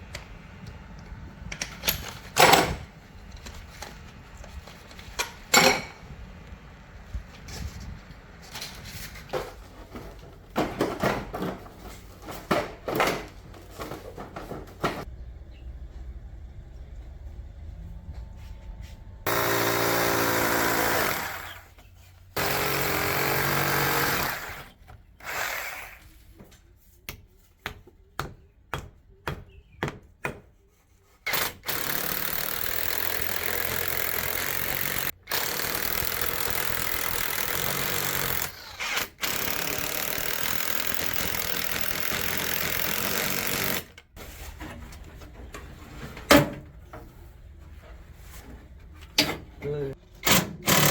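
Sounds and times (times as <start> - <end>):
power tool running: 19.2 - 21.8, 22.4 - 26.0, 31.3 - 44.0, 50.2 - 50.9.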